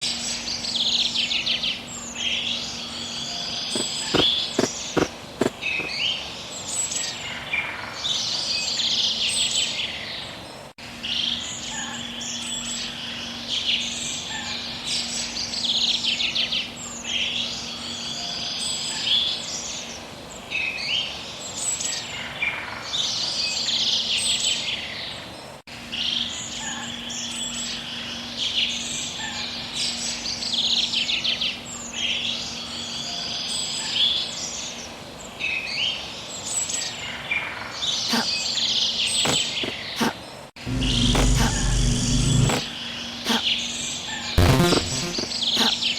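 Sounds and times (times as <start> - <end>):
birds chirping: 3.2 - 6.2
faint steady hum: 40.6 - 42.7.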